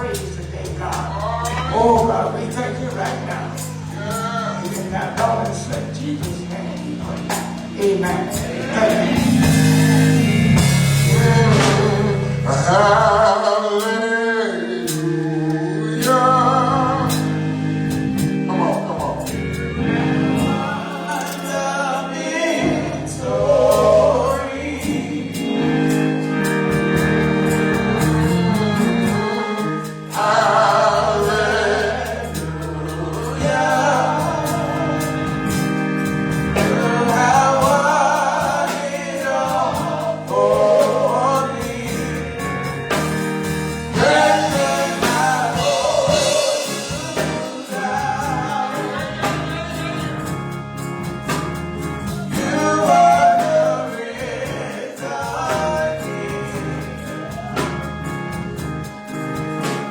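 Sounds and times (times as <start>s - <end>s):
gospel choir singing: 0.0s - 59.9s
held instrumental chords: 0.0s - 59.9s.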